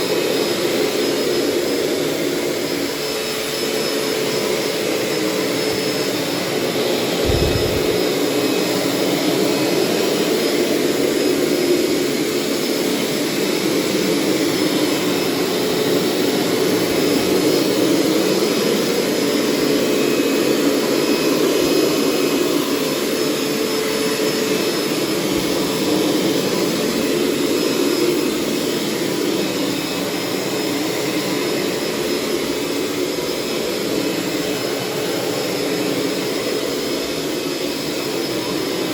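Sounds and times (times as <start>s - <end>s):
carpet cleaner motor whining: 0.0s - 38.9s
low bump: 7.2s - 8.0s.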